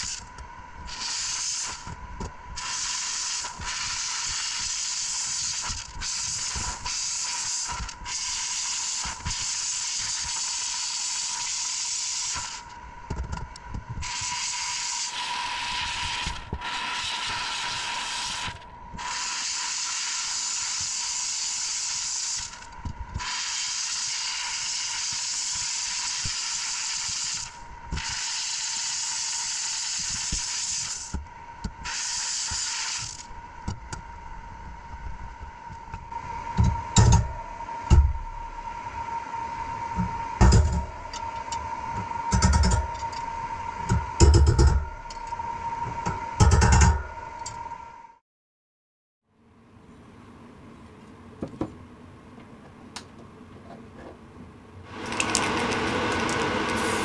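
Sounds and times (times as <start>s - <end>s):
faint steady whine: 0.0s - 16.9s, 24.1s - 48.2s
hissing air spray bursts: 0.9s - 1.9s, 2.6s - 12.6s, 14.0s - 22.6s, 23.2s - 31.1s, 31.8s - 33.3s, 56.6s - 57.0s.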